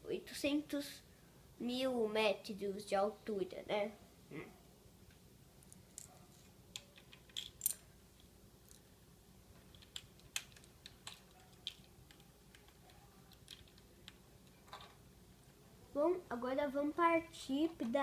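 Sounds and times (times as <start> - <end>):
plastic pieces clicking: 9.7 - 15.0.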